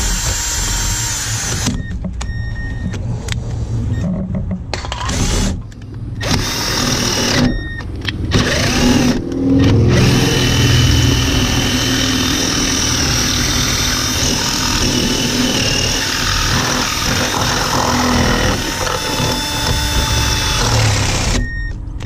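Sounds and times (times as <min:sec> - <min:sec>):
power drill drilling steel: 0:00.0 - 0:01.7, 0:06.2 - 0:07.5, 0:08.3 - 0:21.4.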